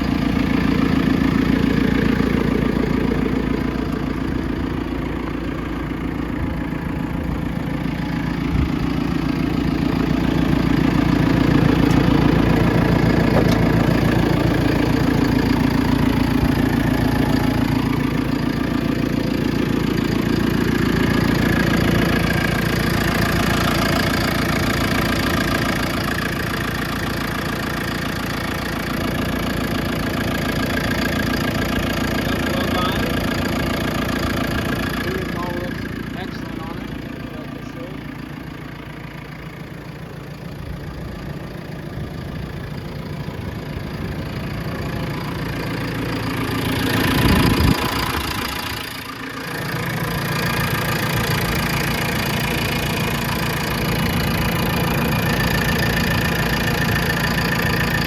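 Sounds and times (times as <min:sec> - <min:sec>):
diesel engine idling: 0:00.0 - 0:58.0.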